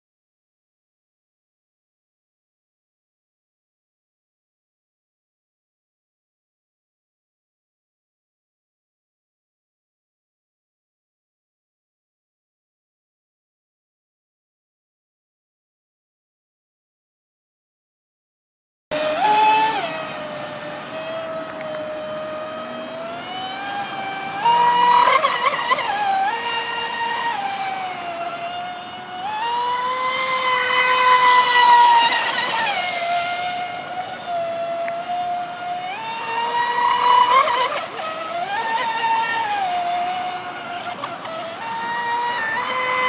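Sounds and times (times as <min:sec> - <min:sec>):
electric motor whine: 0:18.9 - 0:43.0.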